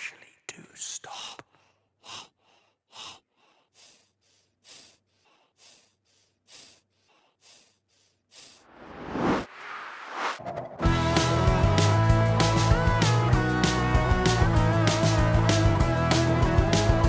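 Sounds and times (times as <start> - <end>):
person panting: 1.1 - 8.7.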